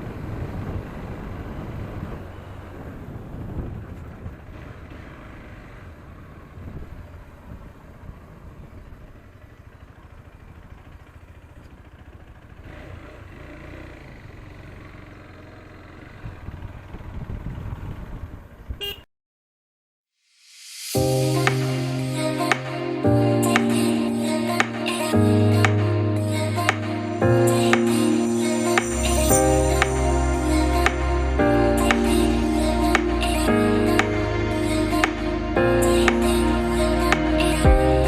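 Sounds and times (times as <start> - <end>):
wind buffeting microphone: 0.0 - 4.6, 16.2 - 18.8
motorcycle engine running: 0.0 - 19.0.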